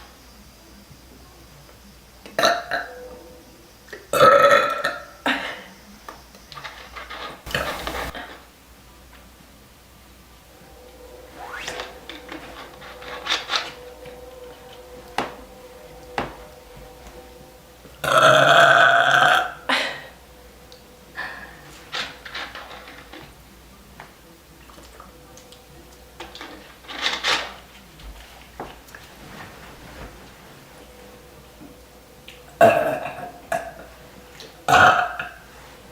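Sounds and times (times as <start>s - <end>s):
woman burping: 2.4s - 2.9s, 18.0s - 20.2s, 32.6s - 33.9s, 34.7s - 35.4s.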